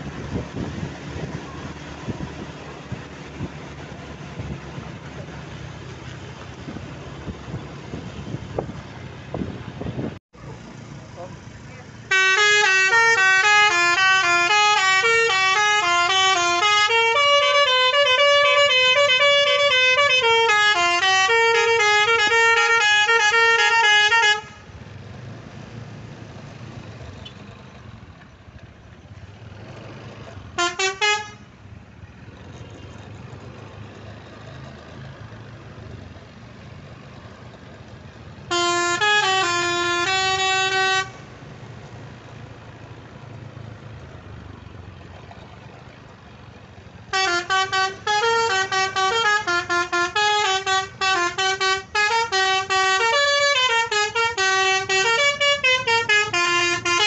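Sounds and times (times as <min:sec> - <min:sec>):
engine and road rumble: 0:00.0 - 0:57.0
multi-note bus air horn melody: 0:12.1 - 0:24.7, 0:30.6 - 0:31.5, 0:38.5 - 0:41.2, 0:47.1 - 0:57.0.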